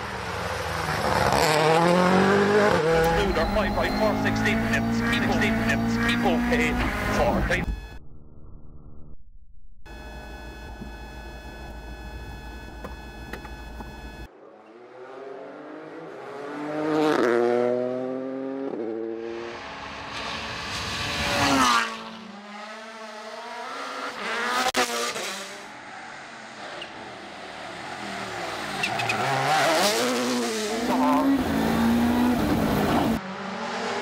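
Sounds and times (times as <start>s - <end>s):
rally car engines revving: 0.0s - 7.9s, 10.0s - 34.0s.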